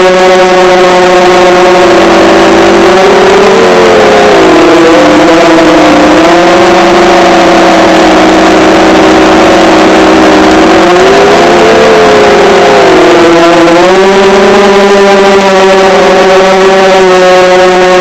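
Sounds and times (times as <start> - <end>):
quadcopter motors whining: 0.0 - 18.0.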